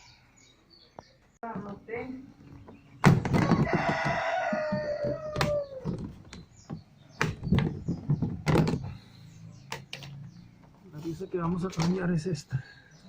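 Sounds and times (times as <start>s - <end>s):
rooster crowing: 3.4s - 5.9s.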